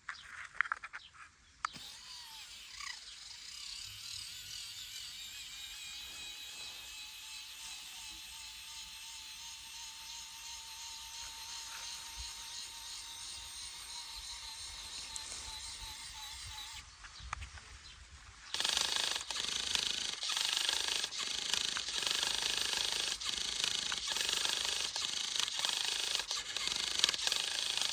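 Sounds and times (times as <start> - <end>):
toy electric motor whining: 1.7 - 16.9, 18.5 - 27.9.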